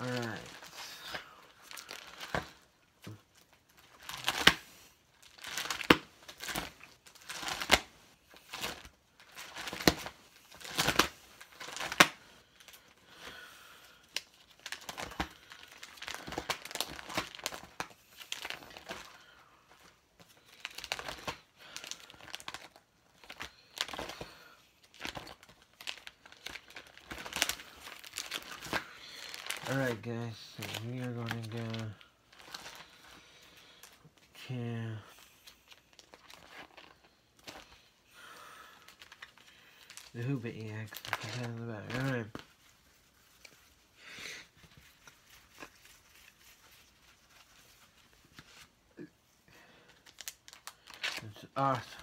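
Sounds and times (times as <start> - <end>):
plastic and foil crinkling: 0.0 - 52.0.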